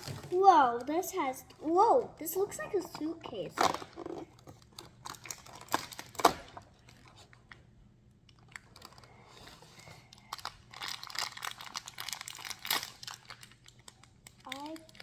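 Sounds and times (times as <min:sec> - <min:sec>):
plastic packaging crinkling: 0:02.8 - 0:07.6, 0:10.0 - 0:15.0
plastic packaging clicks: 0:03.6 - 0:07.6, 0:10.2 - 0:15.0.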